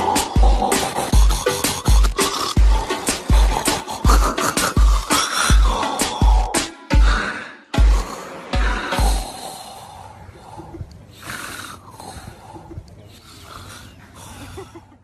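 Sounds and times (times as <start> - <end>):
deep bass-drum beats: 0.0 - 7.2, 7.8 - 9.3
man snoring: 0.0 - 12.6.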